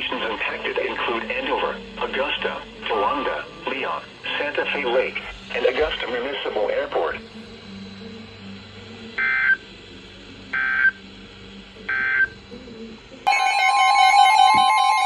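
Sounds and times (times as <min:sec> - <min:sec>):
steady high tone: 0:13.3 - 0:15.0.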